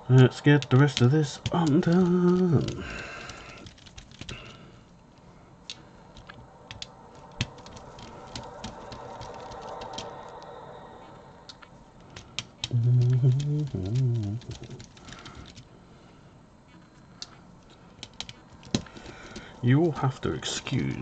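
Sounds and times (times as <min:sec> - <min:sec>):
faint steady whir: 0:00.0 - 0:21.0
plastic parts clicking: 0:17.2 - 0:19.6.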